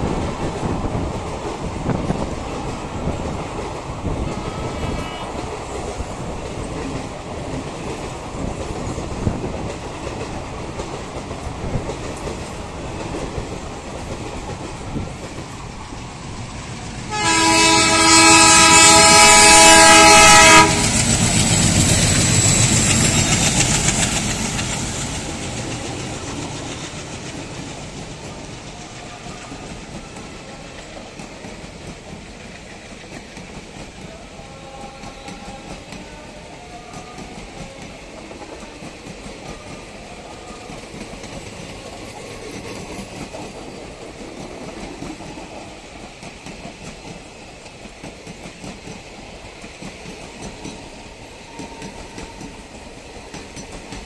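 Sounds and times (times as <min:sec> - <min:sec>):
diesel locomotive engine rumble: 0:00.0 - 0:54.0
train wheel clatter: 0:00.0 - 0:54.0
train horn blast: 0:04.2 - 0:05.4, 0:17.1 - 0:21.1.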